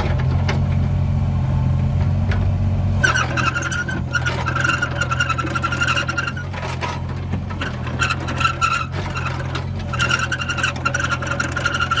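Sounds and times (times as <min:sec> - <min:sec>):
diesel engine low hum: 0:00.0 - 0:12.0
high squeal: 0:03.0 - 0:06.8, 0:07.6 - 0:12.0.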